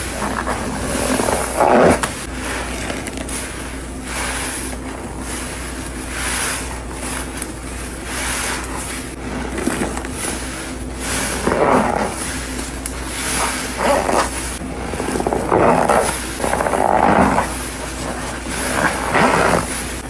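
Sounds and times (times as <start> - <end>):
wet sponge squelching: 0.0 - 20.0.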